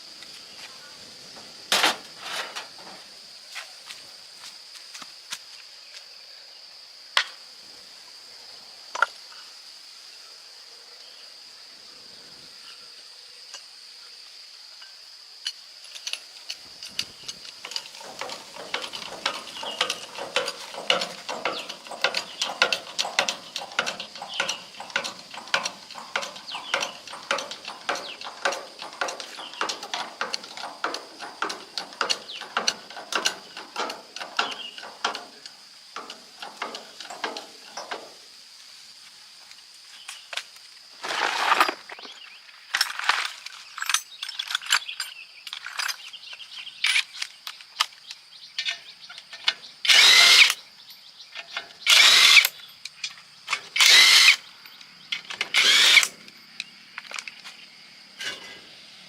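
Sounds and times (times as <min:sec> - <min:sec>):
hand tools clicking and rattling: 0:01.7 - 0:03.0, 0:15.4 - 0:38.2, 0:42.8 - 0:57.4
high-pitched insect drone: 0:48.7 - 0:59.0.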